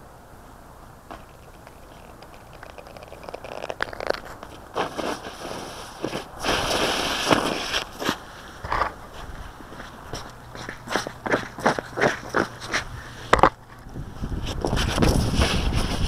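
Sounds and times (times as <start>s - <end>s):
footsteps crunching on frozen ground: 4.1s - 13.0s.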